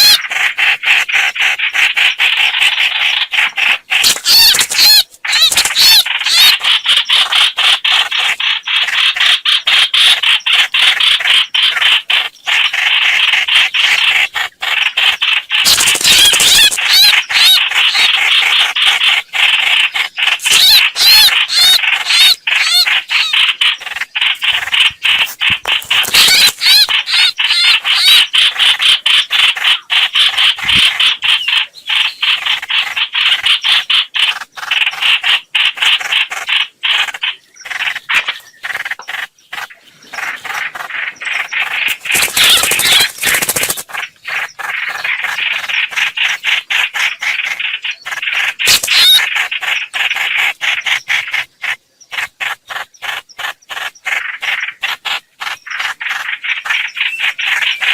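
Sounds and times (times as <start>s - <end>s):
bird harsh chattering call: 0.0s - 57.9s.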